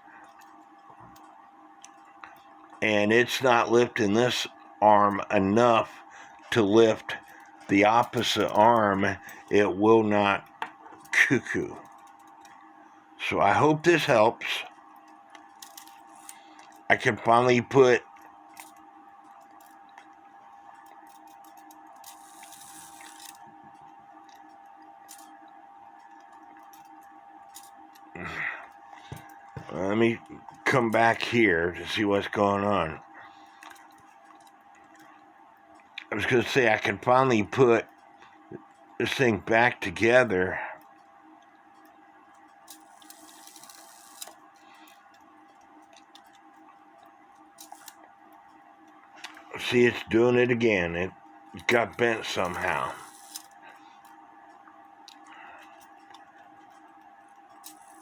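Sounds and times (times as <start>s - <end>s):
faint hum: 0.0s - 58.0s
clock mechanism clicks: 20.8s - 25.4s, 42.7s - 46.4s, 47.6s - 48.0s, 51.6s - 53.6s, 57.5s - 58.0s.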